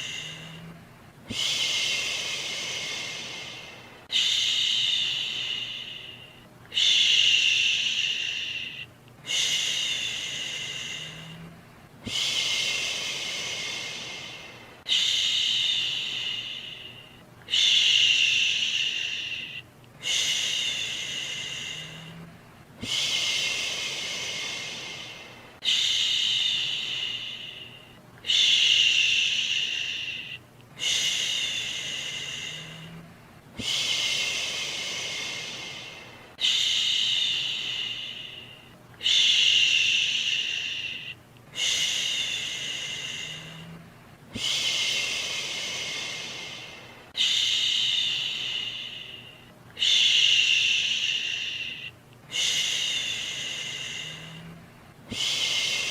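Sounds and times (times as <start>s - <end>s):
person shushing: 0.0s - 33.0s
white noise hiss: 0.0s - 55.9s.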